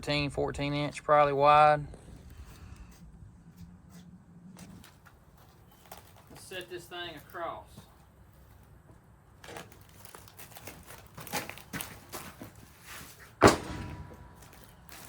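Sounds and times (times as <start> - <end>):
footsteps with scuffs: 2.0 - 13.4
heavy wooden slab thud: 13.4 - 14.4.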